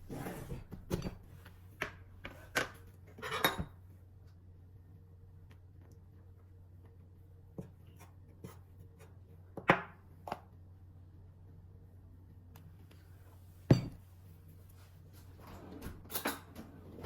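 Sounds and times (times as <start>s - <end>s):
low steady hum: 0.0s - 17.0s
utensils and dishes clinking: 3.2s - 3.8s, 15.6s - 16.8s.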